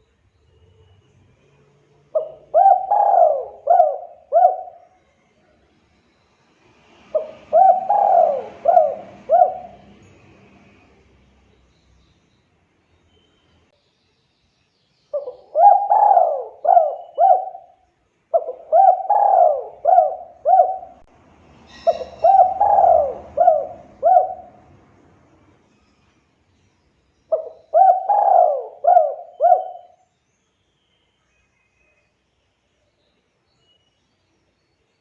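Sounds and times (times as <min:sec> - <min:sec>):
dove cooing: 0:02.1 - 0:04.9, 0:07.1 - 0:10.2, 0:15.2 - 0:21.1, 0:21.7 - 0:24.8, 0:27.3 - 0:30.0.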